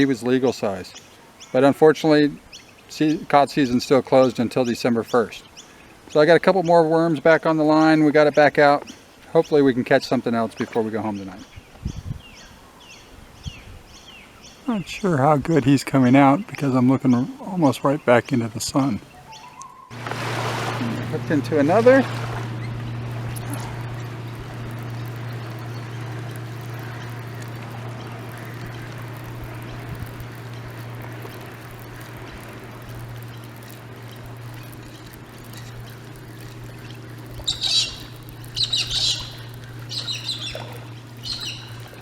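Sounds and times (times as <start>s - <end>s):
birds squawking: 17.1s - 42.0s
steady low hum: 19.9s - 42.0s.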